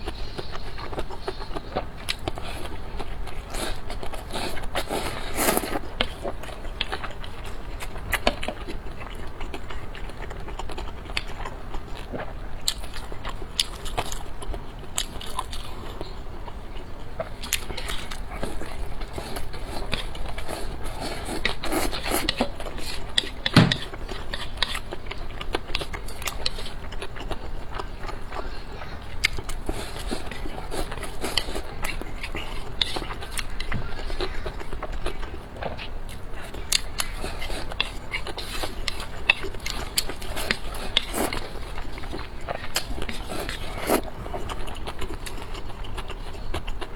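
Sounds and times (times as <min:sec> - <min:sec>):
biting and chewing: 0:00.0 - 0:46.9
loud knock: 0:23.5 - 0:23.9.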